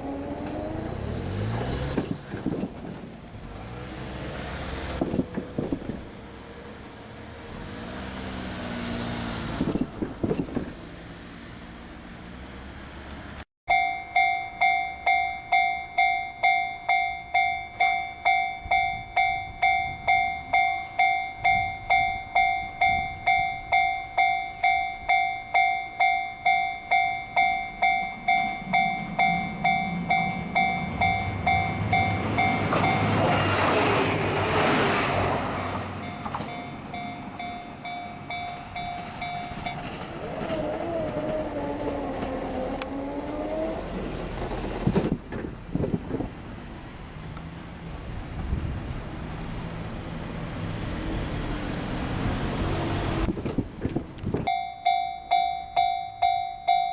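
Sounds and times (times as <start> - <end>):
road vehicle passing: 0.0 - 2.6, 3.2 - 13.4, 27.7 - 54.4
train rumbling past: 0.0 - 13.1, 15.5 - 56.9
crossing bell ringing: 13.7 - 40.2, 54.4 - 56.9.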